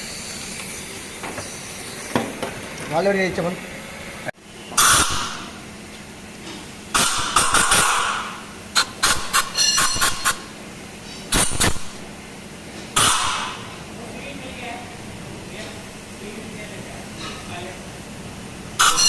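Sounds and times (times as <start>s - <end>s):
compressed air blasts hissing: 7.0s - 10.5s, 11.2s - 12.0s.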